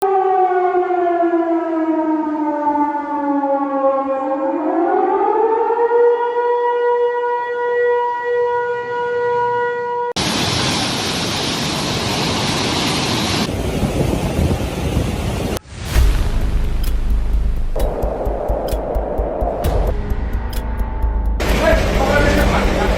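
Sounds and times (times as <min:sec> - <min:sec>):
siren wailing: 0:00.0 - 0:10.2
loud steady rushing noise: 0:10.2 - 0:20.4, 0:21.4 - 0:22.9.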